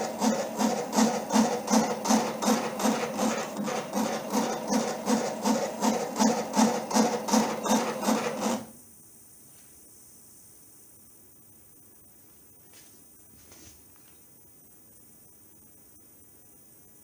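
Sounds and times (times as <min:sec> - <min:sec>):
stepper motors pulsing: 0:00.0 - 0:08.7.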